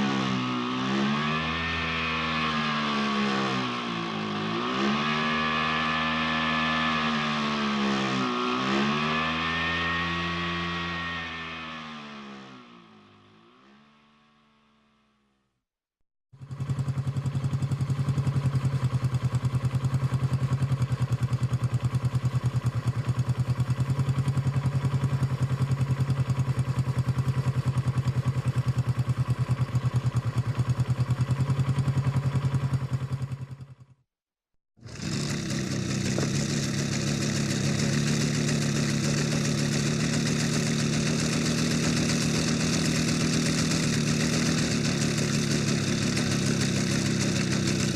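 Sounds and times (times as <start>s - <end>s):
motorcycle engine idling: 16.3s - 34.0s, 34.8s - 47.9s
hissy motorcycle engine idling: 16.4s - 33.8s, 34.9s - 47.9s.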